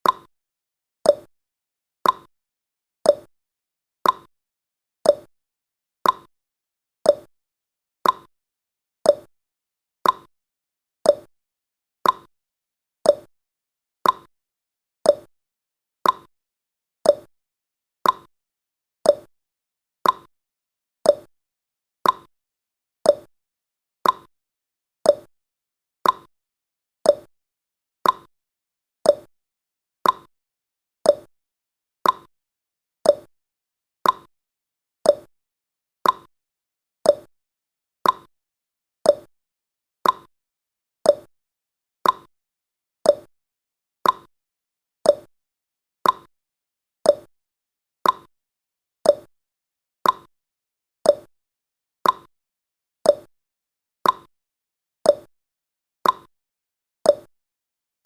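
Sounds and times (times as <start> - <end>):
clock ticking: 40.0 - 40.3, 46.0 - 46.3.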